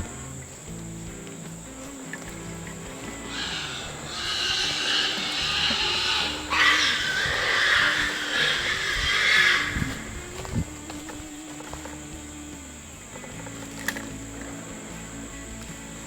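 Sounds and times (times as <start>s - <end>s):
high insect drone: 0.0s - 16.0s
hogs squealing harshly: 2.0s - 11.4s.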